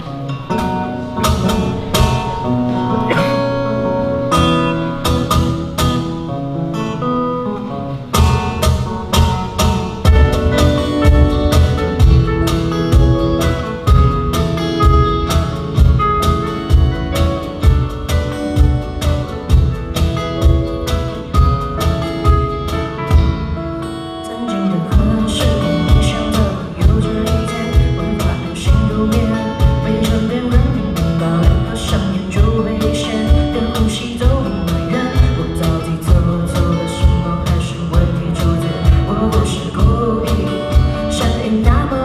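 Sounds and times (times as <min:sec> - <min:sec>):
rising guitar slide: 0:00.0 - 0:19.5
guitar: 0:00.0 - 0:42.0
drum kit beat: 0:00.5 - 0:06.3, 0:08.1 - 0:23.8, 0:25.0 - 0:42.0
person singing: 0:24.2 - 0:42.0.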